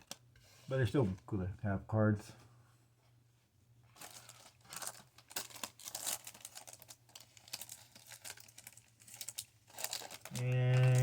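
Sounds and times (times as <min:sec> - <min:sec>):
plastic wrapper crinkling: 0:00.0 - 0:00.2, 0:03.9 - 0:11.0.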